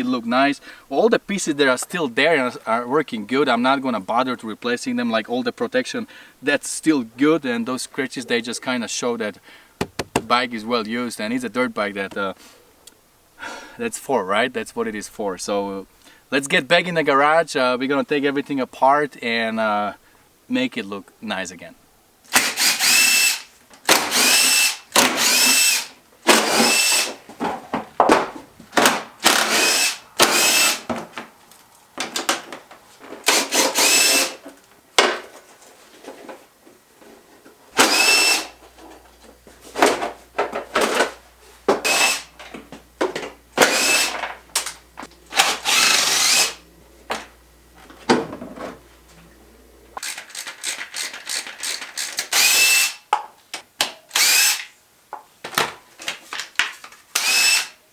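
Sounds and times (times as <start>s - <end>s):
power drill bursts: 22.3s - 27.2s, 28.9s - 30.9s, 33.2s - 34.4s, 37.8s - 38.6s, 41.7s - 42.5s, 43.6s - 47.3s, 50.0s - 53.0s, 54.1s - 54.7s, 57.1s - 57.8s.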